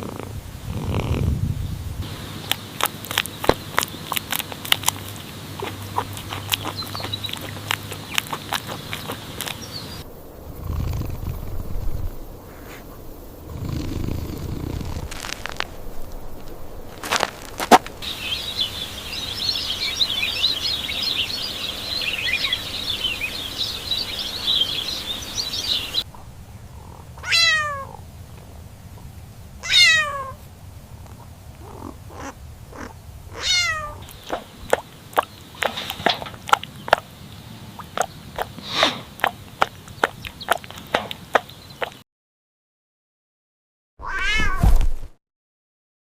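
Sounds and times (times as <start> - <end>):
dense high chirping: 15.8 - 28.2
kitten meows: 27.2 - 28.0, 29.6 - 30.4, 33.3 - 34.0, 44.0 - 44.8.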